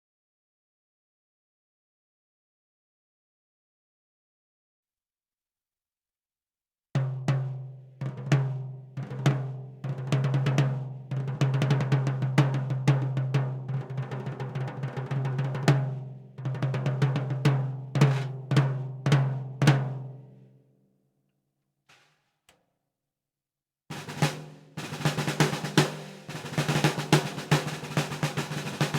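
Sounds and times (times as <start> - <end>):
snare drum strokes and roll: 7.0 - 20.1, 23.9 - 28.9.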